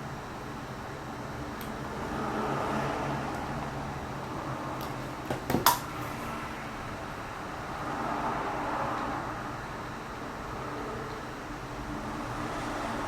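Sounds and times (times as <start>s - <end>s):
background hum and hiss: 0.0s - 13.0s.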